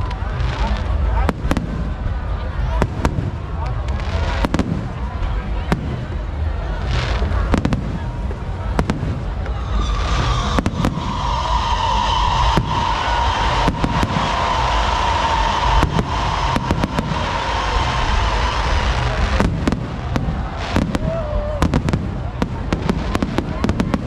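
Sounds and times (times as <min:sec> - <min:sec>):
fireworks bangs and cracks: 0:00.0 - 0:24.0
low rumble: 0:00.0 - 0:24.0
steady high tone: 0:09.4 - 0:20.6.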